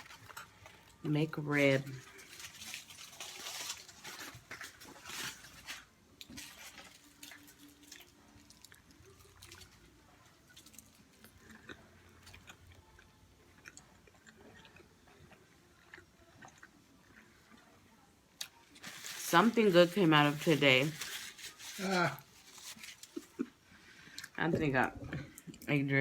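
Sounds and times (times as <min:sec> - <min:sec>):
person chewing food: 0:06.2 - 0:17.7.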